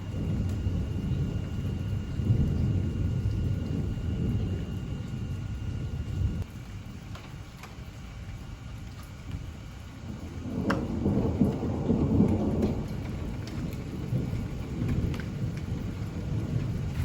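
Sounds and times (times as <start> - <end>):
deep rumble: 0.0 - 6.5, 10.5 - 17.0
steady rain: 0.0 - 17.0.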